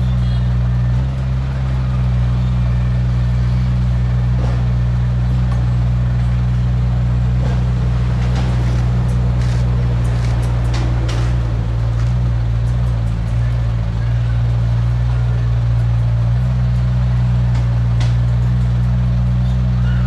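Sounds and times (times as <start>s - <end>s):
diesel engine droning: 0.0s - 20.0s.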